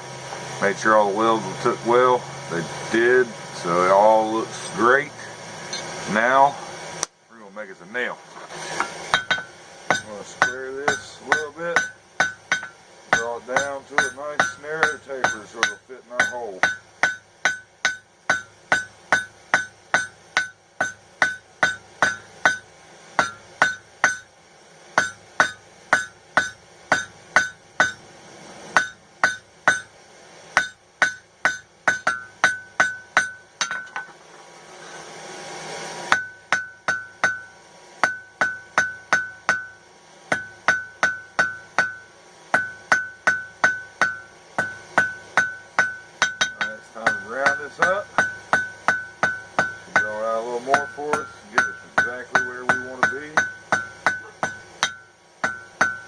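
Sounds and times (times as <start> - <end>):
hammer striking steel on anvil: 8.8 - 24.3, 25.0 - 28.1, 28.8 - 30.0, 30.6 - 34.1, 36.1 - 56.0.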